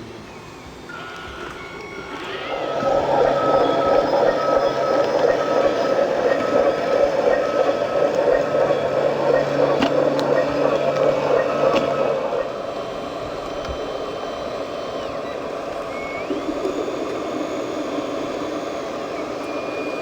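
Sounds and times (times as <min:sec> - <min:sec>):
rapid regular beeping: 0:00.9 - 0:20.0
vehicle engine running: 0:02.3 - 0:13.0.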